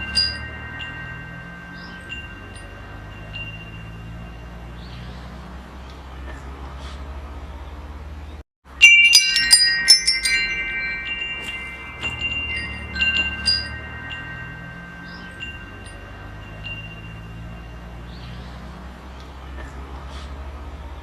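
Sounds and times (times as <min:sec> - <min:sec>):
wind chimes ringing: 0:00.0 - 0:05.8, 0:08.7 - 0:19.2.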